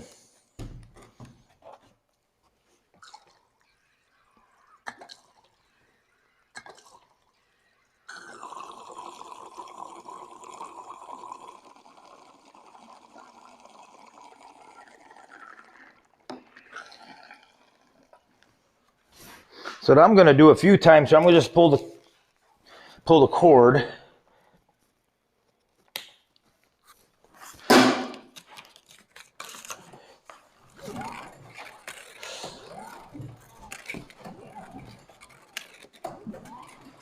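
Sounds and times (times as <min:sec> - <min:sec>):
fuel pouring into tank: 0:08.0 - 0:18.4.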